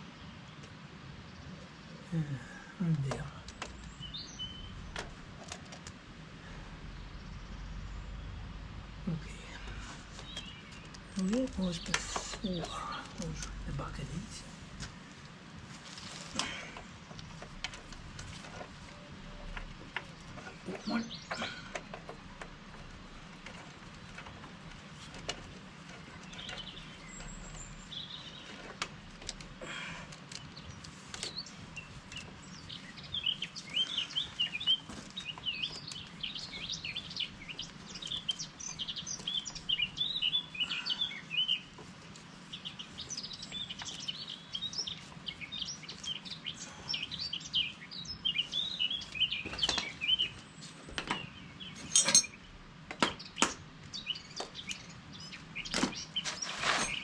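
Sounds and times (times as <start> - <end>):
songbirds chirping and twittering: 0.0 - 57.0.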